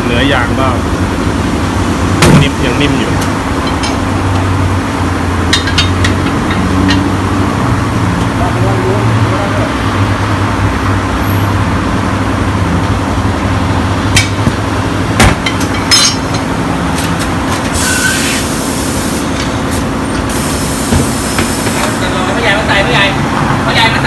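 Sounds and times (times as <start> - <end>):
compressed air hissing: 17.7 - 22.0.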